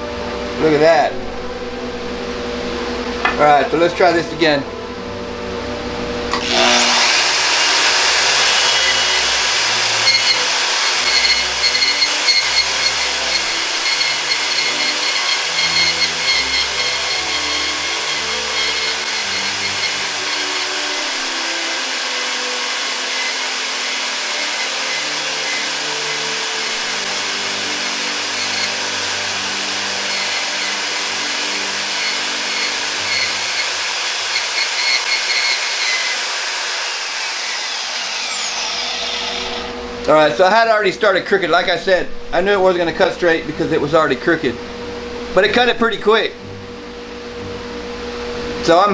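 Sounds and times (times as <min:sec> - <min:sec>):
band saw cutting metal pipe: 0:06.3 - 0:40.1.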